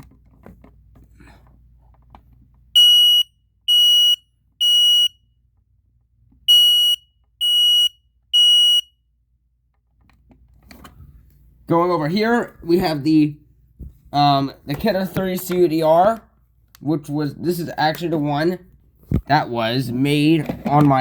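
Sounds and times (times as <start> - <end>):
smoke alarm beeping: 2.8 - 5.2, 6.5 - 8.9.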